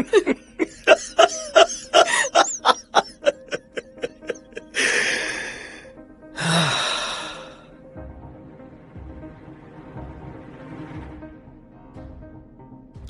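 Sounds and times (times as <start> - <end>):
man laughing: 0.0 - 5.6
quiet dramatic music: 0.0 - 13.0
breathy swells: 3.6 - 9.6.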